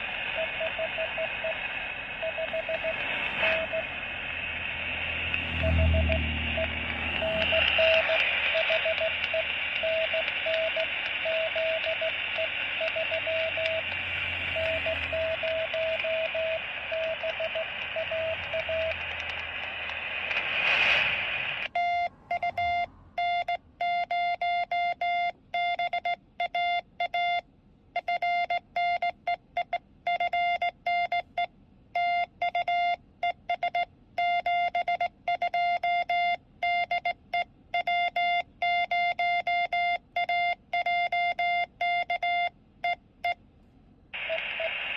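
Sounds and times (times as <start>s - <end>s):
radio static: 0.0s - 21.8s, 44.2s - 44.9s
morse code tones: 0.3s - 4.0s, 5.4s - 19.1s, 21.7s - 27.4s, 28.0s - 43.4s, 44.2s - 44.9s.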